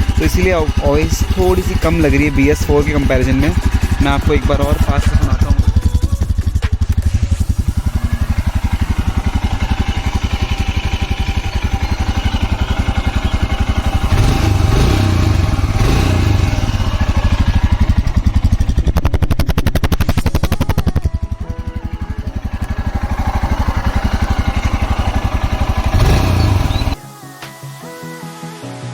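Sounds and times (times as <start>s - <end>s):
motorcycle engine idling and revving: 0.0s - 27.0s.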